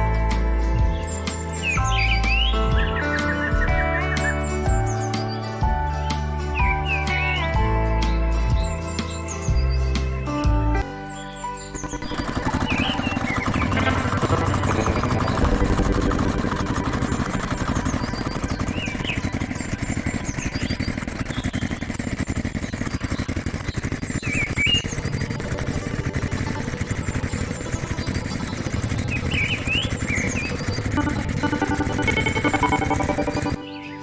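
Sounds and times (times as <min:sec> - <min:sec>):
bird chirps: 0:00.9 - 0:05.7, 0:11.1 - 0:34.0
engine rumbling: 0:11.6 - 0:33.8.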